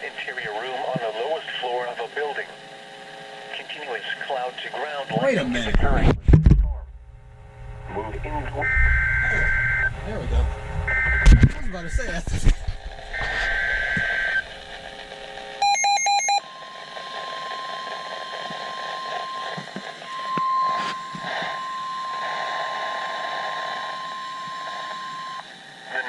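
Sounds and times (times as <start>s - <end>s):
receiver hiss: 0.0s - 26.0s
warbling data tones: 6.8s - 26.0s
steady warning alarm tone: 7.4s - 12.0s, 13.0s - 26.0s
quick beeps: 15.6s - 16.4s.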